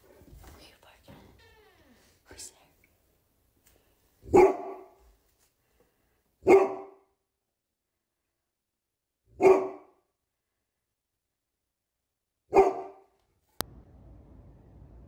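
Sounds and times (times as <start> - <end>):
dog barking: 4.2 - 5.0, 6.4 - 7.1, 9.4 - 10.0, 12.5 - 13.2.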